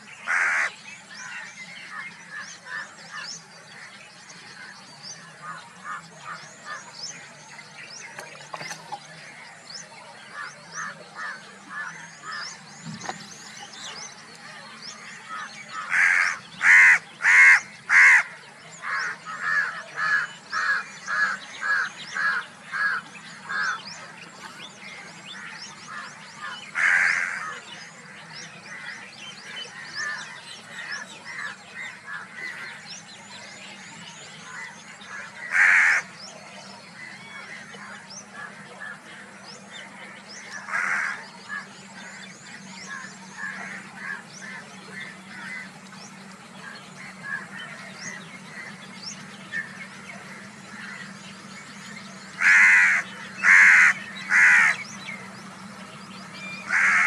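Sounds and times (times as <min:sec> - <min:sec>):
bird honking calls: 0:14.9 - 0:57.0.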